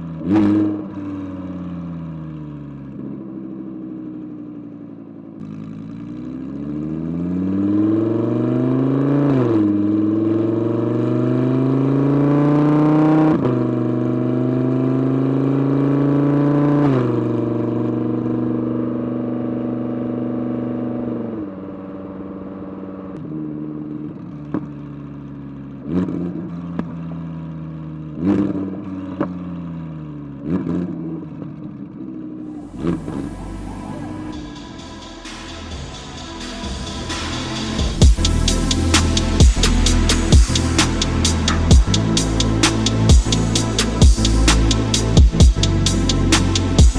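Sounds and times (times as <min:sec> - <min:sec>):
sports car engine accelerating: 0:00.0 - 0:46.9
engine throttle blips: 0:32.4 - 0:46.9.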